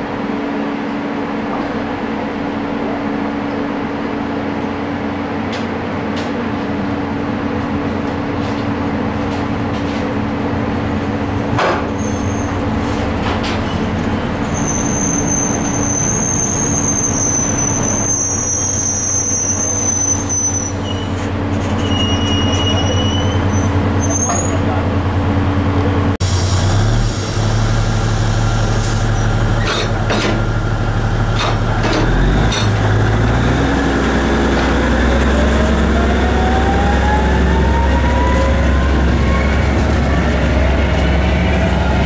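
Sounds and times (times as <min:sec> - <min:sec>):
train moving: 0:00.0 - 0:42.0
steel wheels squealing on rails: 0:11.7 - 0:24.8, 0:26.4 - 0:30.5, 0:37.1 - 0:42.0.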